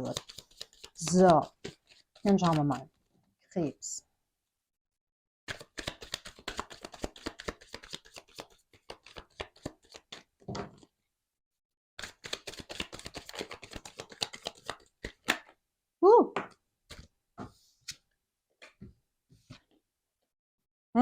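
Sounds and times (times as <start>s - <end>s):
cards being shuffled: 0.0s - 2.8s, 5.5s - 10.9s, 12.0s - 15.5s, 16.9s - 17.1s.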